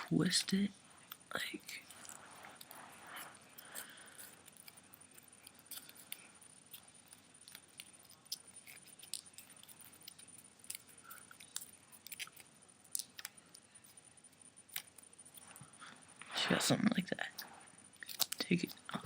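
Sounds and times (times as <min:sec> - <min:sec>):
paper crinkling: 0:17.4 - 0:19.0.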